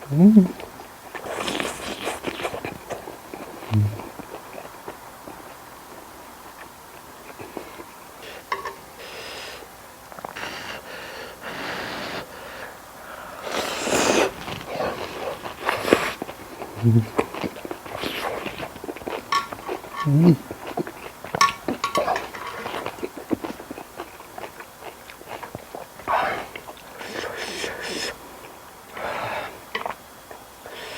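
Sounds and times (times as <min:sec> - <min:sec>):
person chewing: 0:00.1 - 0:08.8, 0:13.4 - 0:30.9
sniffs and nasal breaths: 0:07.5 - 0:17.2, 0:26.0 - 0:28.3, 0:28.9 - 0:29.7, 0:30.6 - 0:30.9.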